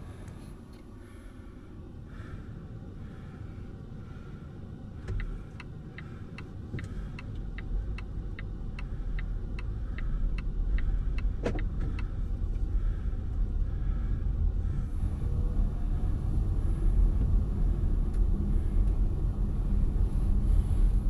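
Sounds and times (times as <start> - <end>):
road and tyre rumble: 0.0 - 21.0
turn signal ticking: 5.0 - 13.7.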